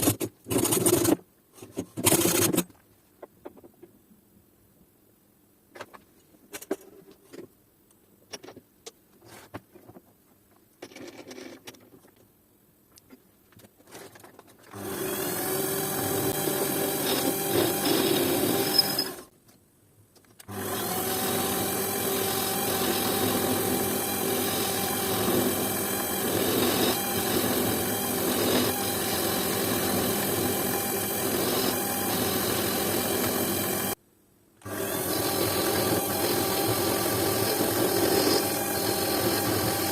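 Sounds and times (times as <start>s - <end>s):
electric power tool grinding: 14.7s - 19.3s, 20.5s - 34.0s, 34.6s - 39.9s.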